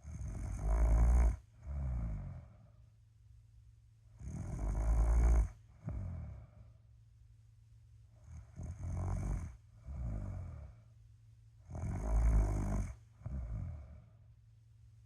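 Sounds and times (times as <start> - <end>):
person snoring: 0.0 - 2.6, 4.2 - 6.6, 8.2 - 10.8, 11.7 - 14.2.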